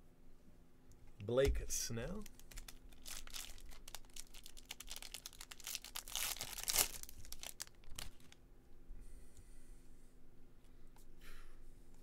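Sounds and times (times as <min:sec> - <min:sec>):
foil wrapper crinkling and tearing: 0:02.2 - 0:08.4.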